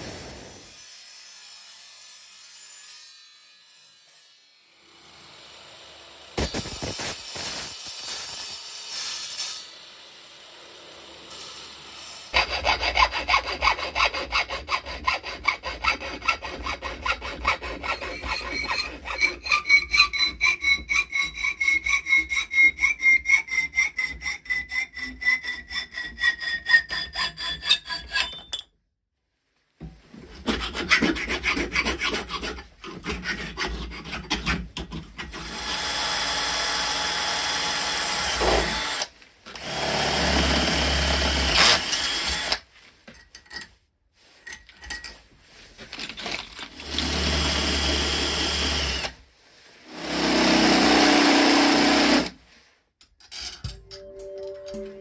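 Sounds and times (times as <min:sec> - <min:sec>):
hand saw cutting: 0:12.3 - 0:28.4, 0:30.2 - 0:42.7, 0:46.7 - 0:49.2, 0:49.8 - 0:52.4
power tool running: 0:35.4 - 0:42.6, 0:49.9 - 0:52.3.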